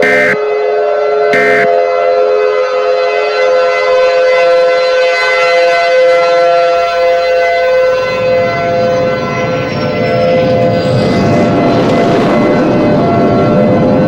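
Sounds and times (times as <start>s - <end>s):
data tones burst: 0.0s - 0.4s, 1.4s - 1.7s
multi-tone siren: 0.0s - 14.0s.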